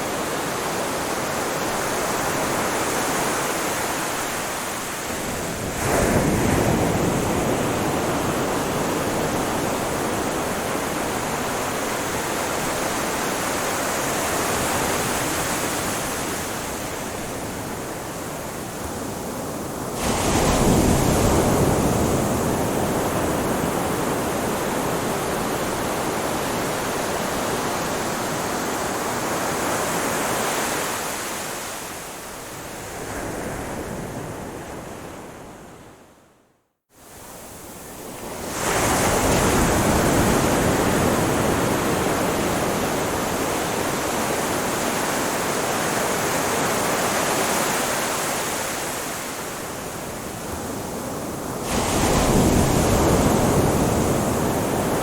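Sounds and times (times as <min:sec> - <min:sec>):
ocean waves breaking: 0:38.0 - 0:55.0.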